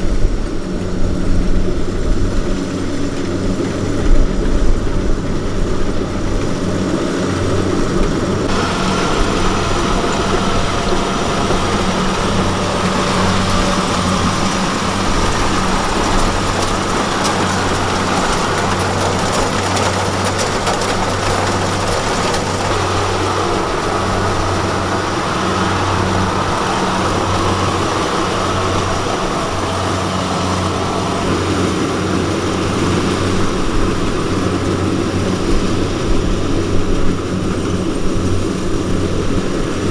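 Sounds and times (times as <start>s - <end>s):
diesel engine humming: 0.0s - 39.9s
mechanical whirring: 8.5s - 29.6s.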